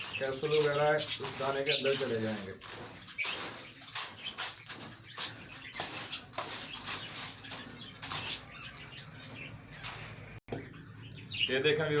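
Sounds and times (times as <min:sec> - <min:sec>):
dry seeds rustling by hand: 0:00.0 - 0:09.0.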